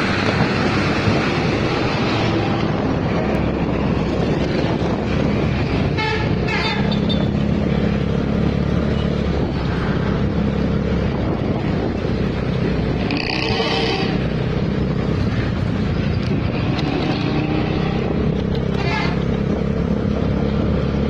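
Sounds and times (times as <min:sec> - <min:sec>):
bus engine running: 0:00.0 - 0:21.0
road traffic: 0:00.0 - 0:21.0
warbling multi-tone bus horn: 0:05.8 - 0:07.3, 0:13.0 - 0:14.4.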